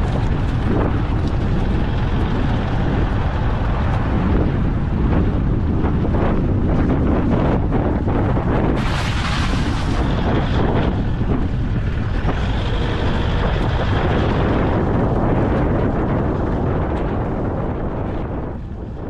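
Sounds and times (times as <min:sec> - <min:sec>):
wind buffeting microphone: 0:00.0 - 0:19.0
hissing rush: 0:08.6 - 0:15.3.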